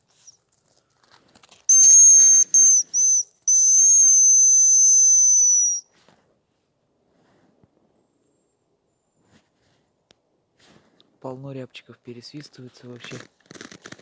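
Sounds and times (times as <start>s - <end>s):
high thin decoy whistle: 1.7s - 5.9s
faint crackles: 12.4s - 14.0s.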